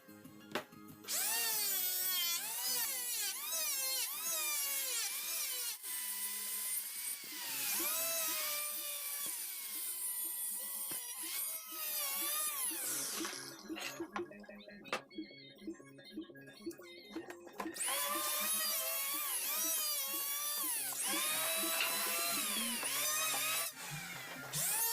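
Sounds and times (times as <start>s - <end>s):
electric power tool cutting wood: 1.1s - 14.0s, 17.8s - 24.9s.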